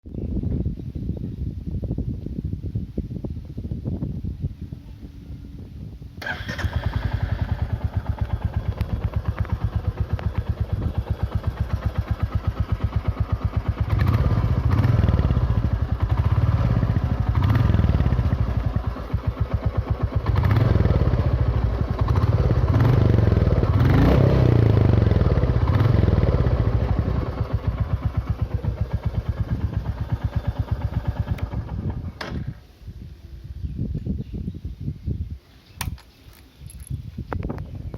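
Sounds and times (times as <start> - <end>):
motorcycle engine idling and revving: 6.2 - 32.7.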